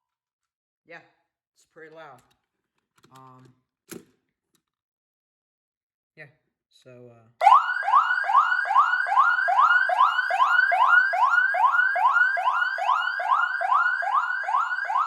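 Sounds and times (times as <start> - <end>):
electronic police siren: 7.4 - 15.0.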